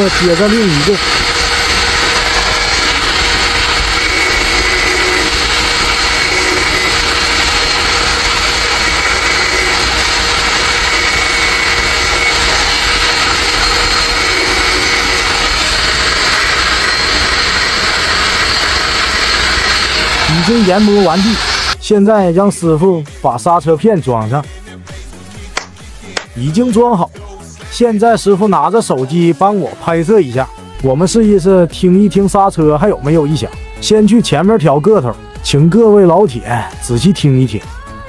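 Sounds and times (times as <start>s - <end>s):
electric grinder grinding brake pad: 0.0s - 21.8s.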